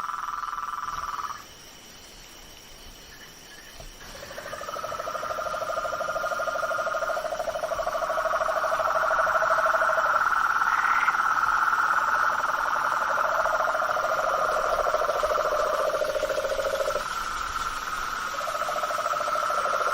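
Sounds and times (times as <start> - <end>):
low pulsed frog trill: 0.0 - 1.4, 4.0 - 19.9
high pulsed frog trill: 4.1 - 19.9.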